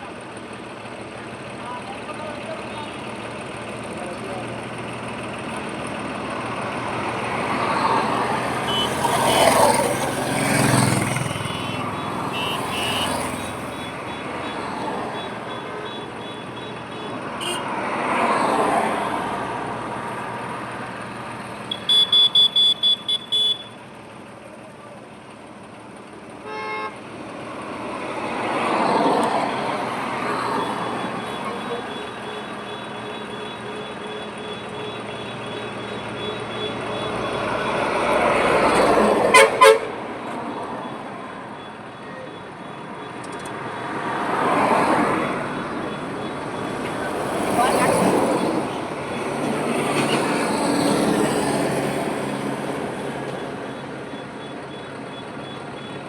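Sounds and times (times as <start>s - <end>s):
highway traffic passing: 0.0s - 56.0s
vehicle horn tooting: 8.5s - 17.8s, 21.7s - 23.8s, 26.4s - 27.1s, 30.7s - 37.6s, 39.3s - 40.0s.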